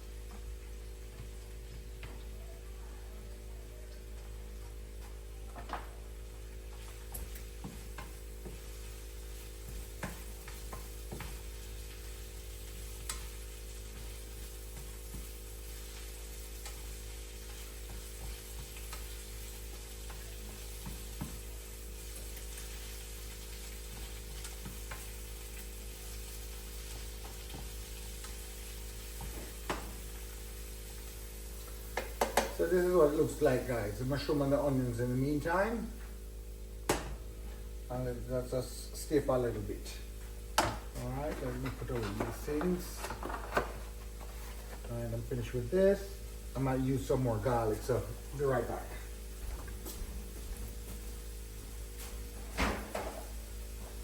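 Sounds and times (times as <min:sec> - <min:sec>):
food sizzling in a pan: 0:00.0 - 0:54.0
utensil scraping a pan: 0:41.0 - 0:44.9.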